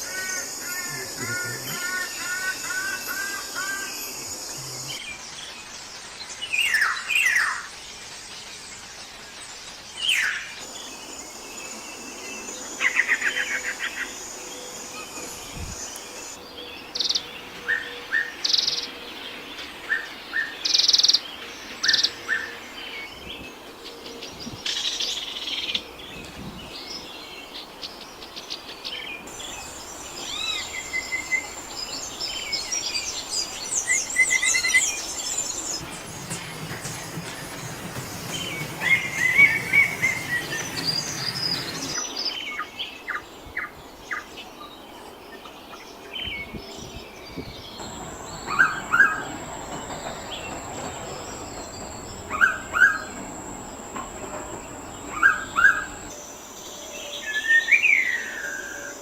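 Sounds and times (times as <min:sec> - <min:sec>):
background hiss: 0:00.0 - 0:17.6, 0:18.3 - 0:59.0
birds whistling and trilling: 0:29.3 - 0:43.7, 0:46.2 - 0:56.1.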